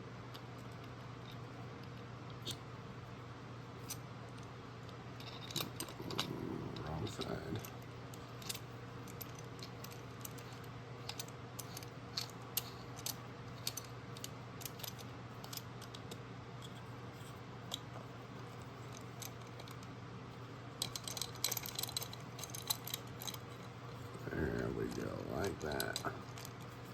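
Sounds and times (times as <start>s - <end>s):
steady low hum: 0.0s - 26.9s
clicks of small parts handled: 7.2s - 16.8s, 20.8s - 23.7s.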